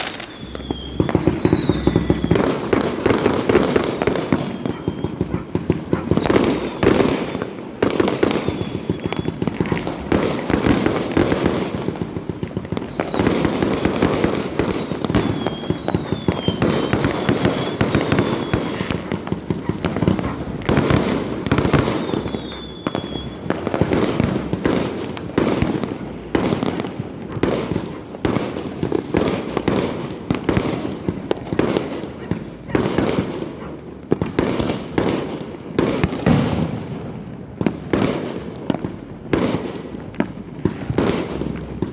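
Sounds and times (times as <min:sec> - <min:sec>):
high whistle: 0:00.0 - 0:03.1, 0:08.3 - 0:09.5, 0:12.8 - 0:19.2, 0:21.5 - 0:23.6
fireworks bangs and crackle: 0:00.0 - 0:41.9.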